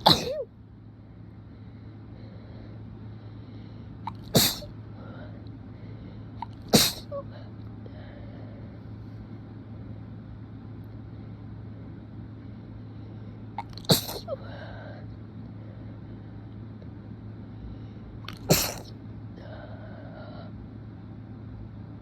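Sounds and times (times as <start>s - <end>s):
man sneezing: 0.0s - 0.4s, 4.1s - 4.7s, 6.4s - 7.2s, 13.6s - 14.4s, 18.3s - 18.9s
steady low hum: 0.0s - 22.0s.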